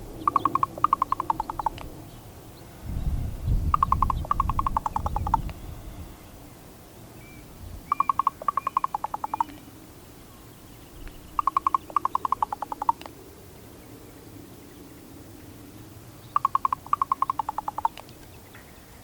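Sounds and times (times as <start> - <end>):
raven clicking calls: 0.0 - 2.0, 3.7 - 5.6, 7.9 - 9.7, 11.0 - 13.2, 16.2 - 18.8.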